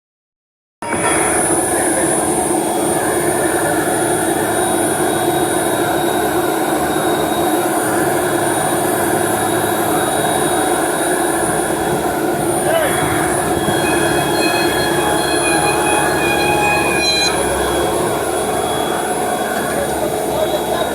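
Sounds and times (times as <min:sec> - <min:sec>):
thin high whine: 0:00.8 - 0:20.9
drilling rig machinery running: 0:00.9 - 0:20.9.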